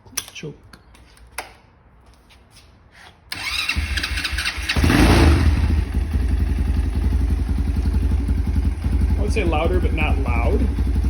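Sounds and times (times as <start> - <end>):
starter cranking: 3.3 - 5.0
minibike engine idling: 3.4 - 11.0.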